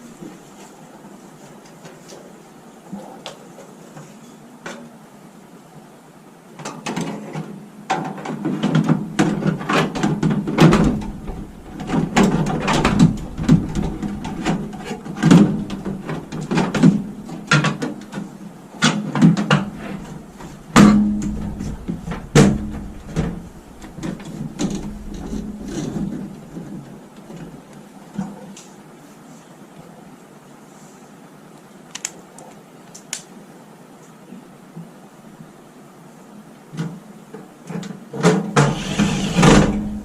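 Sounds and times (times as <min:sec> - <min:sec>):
microwave parts clicking and rattling: 0:09.2 - 0:18.2, 0:19.4 - 0:26.3.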